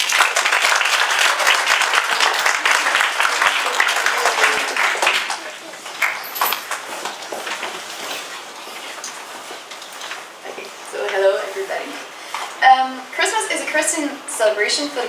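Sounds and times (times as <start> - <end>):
audience applause: 0.0 - 7.9
scattered claps: 0.0 - 8.0.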